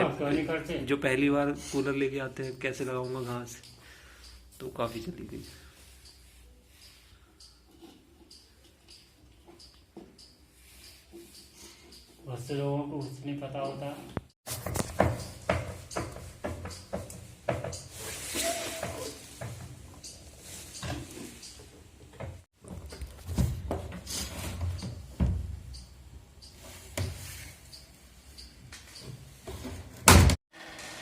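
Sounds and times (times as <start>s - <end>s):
tools knocking and clunking: 14.6s - 17.9s.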